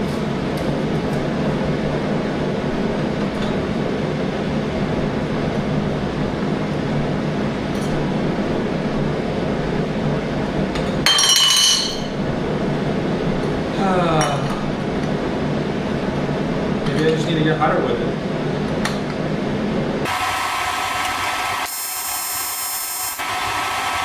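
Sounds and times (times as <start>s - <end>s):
welding arc buzzing: 20.1s - 24.0s.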